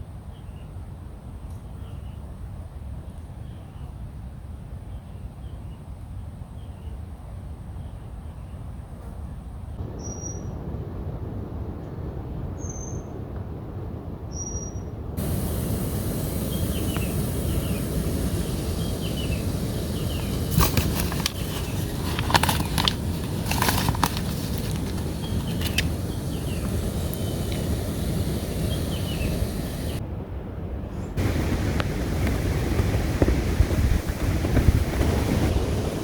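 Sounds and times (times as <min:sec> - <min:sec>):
small bird chirping: 0:10.0 - 0:10.5, 0:14.4 - 0:30.0
wind buffeting microphone: 0:15.0 - 0:36.0.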